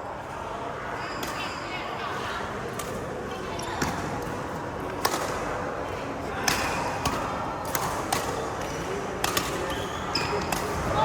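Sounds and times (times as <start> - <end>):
rackets striking shuttlecock: 3.8 - 5.6, 6.4 - 11.0.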